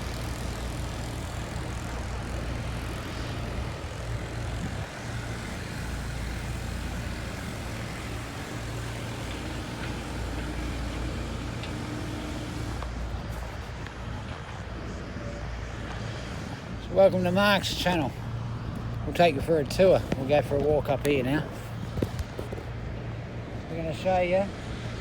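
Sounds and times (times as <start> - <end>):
low engine rumble: 0.0 - 25.0.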